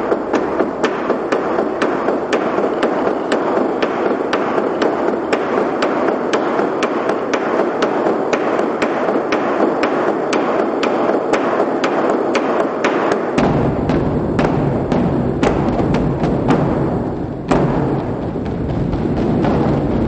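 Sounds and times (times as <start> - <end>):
large drums rolling: 0.0 - 10.3, 13.2 - 20.0
sharp clicks keeping time: 0.0 - 13.5.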